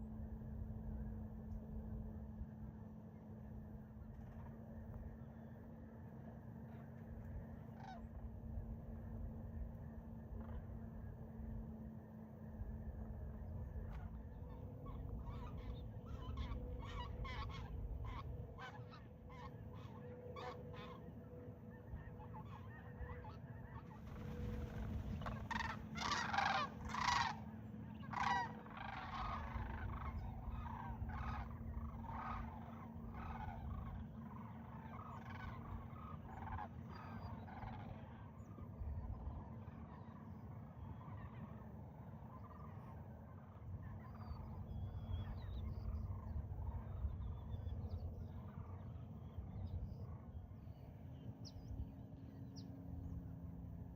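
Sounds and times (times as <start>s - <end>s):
geese honking: 13.8s - 38.2s.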